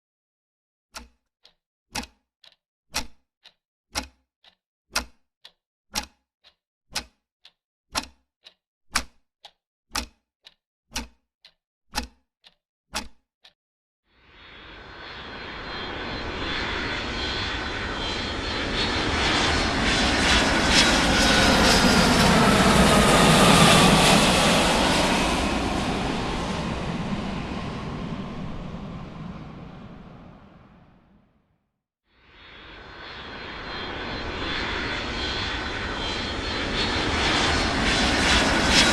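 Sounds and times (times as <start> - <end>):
sharp ticks: 1.0 - 13.6
aircraft flying over: 14.2 - 31.4, 32.2 - 38.9
falling engine whine: 14.3 - 31.3, 32.3 - 38.9.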